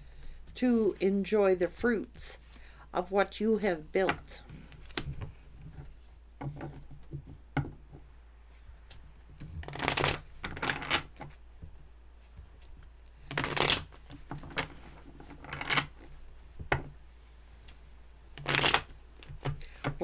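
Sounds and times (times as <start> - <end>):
cards being shuffled: 4.1 - 7.4, 8.0 - 20.0.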